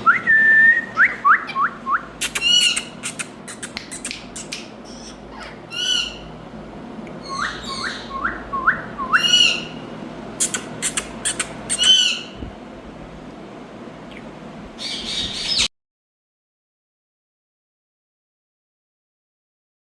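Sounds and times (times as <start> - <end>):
parrot screechy calls: 1.4 - 6.3, 7.2 - 8.2, 9.1 - 12.4, 14.8 - 15.7.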